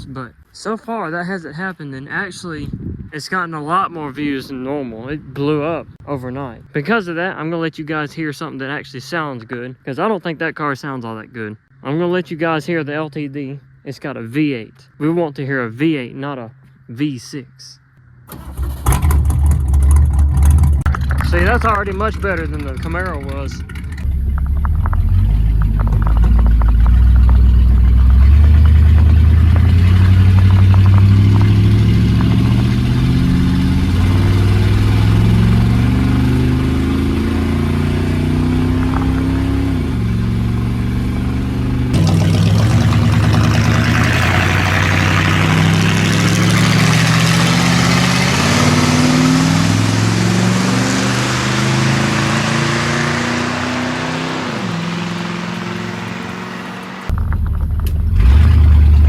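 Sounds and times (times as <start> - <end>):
car engine revving: 18.0 - 59.0.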